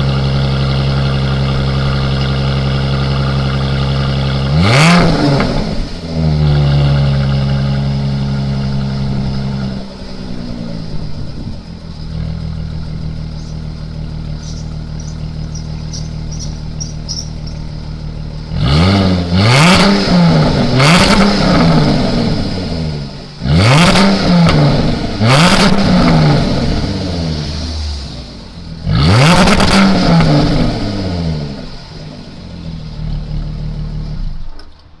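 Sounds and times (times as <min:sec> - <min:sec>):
car engine revving and idling: 0:00.0 - 0:35.0.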